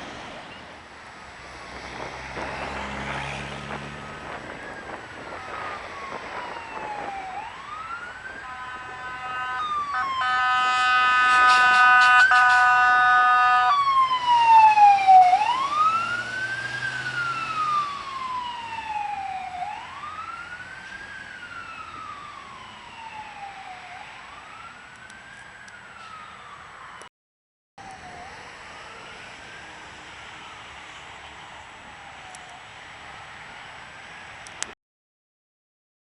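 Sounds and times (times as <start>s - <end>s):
fire engine siren wailing: 1.8s - 27.1s, 27.8s - 33.5s
multi-note horn tone: 8.4s - 13.8s.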